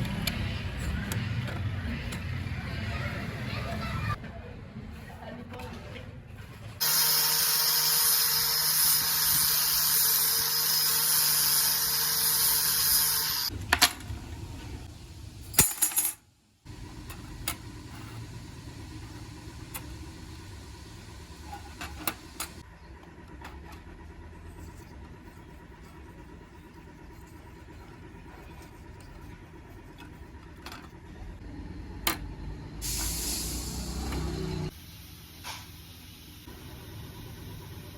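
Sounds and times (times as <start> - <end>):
electric power tool running: 6.8 - 13.5.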